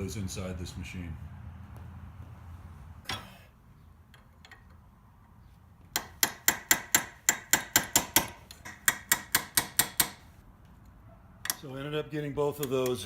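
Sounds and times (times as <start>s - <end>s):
hammer tapping: 5.9s - 10.2s.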